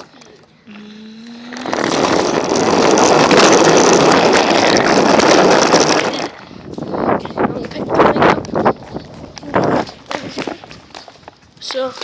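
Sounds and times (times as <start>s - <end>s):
toy car motor and wheels rushing: 0.8s - 7.4s.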